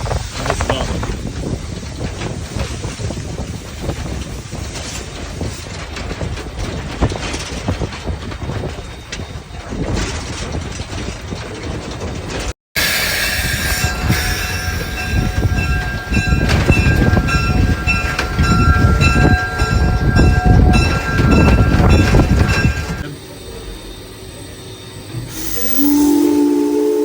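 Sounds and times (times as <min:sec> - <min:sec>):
steam locomotive rumbling: 0:00.0 - 0:27.0
steam whistle chord: 0:25.1 - 0:27.0.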